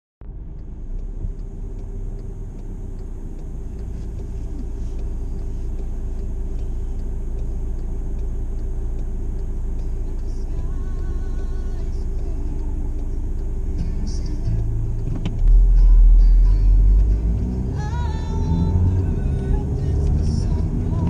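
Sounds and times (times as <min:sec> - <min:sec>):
road traffic rumble: 0:00.2 - 0:21.0
steady hum: 0:00.2 - 0:21.0
faint regular ticks: 0:00.6 - 0:15.4.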